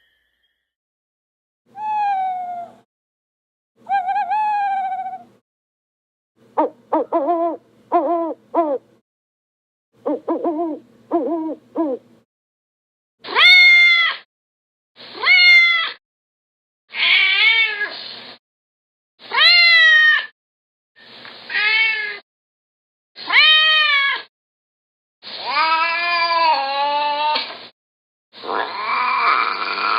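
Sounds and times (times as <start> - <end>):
owl hoots: 6.6 - 8.8, 10.0 - 12.0
cat meowing: 13.3 - 14.2, 16.9 - 17.9, 19.3 - 20.3.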